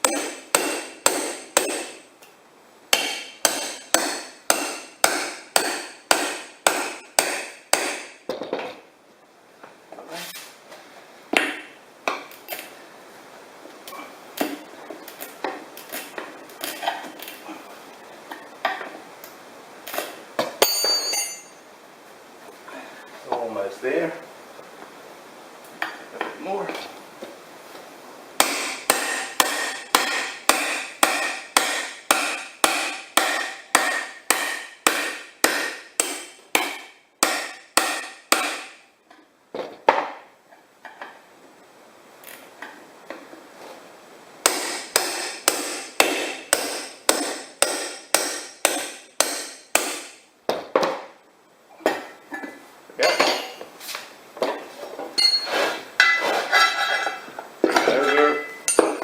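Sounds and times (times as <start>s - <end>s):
metal strokes on a steel wheel: 55.2s - 57.2s.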